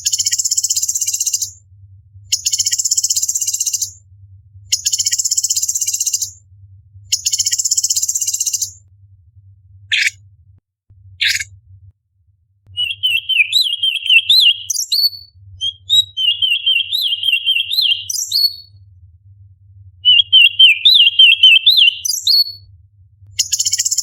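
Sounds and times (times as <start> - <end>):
bird singing high chattering notes: 11.2 - 11.5, 12.8 - 18.7, 20.1 - 22.6.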